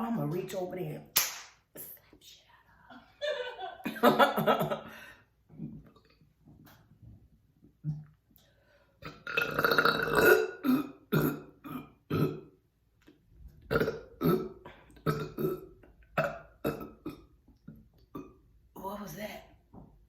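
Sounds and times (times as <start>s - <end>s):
woman burping: 9.0s - 12.6s, 13.7s - 17.4s, 18.1s - 18.5s.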